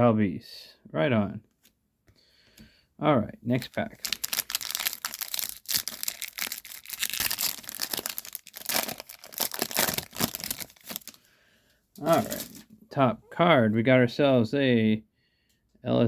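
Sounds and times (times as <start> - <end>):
card pack wrapper tearing and crinkling: 3.5 - 11.2, 12.0 - 12.6.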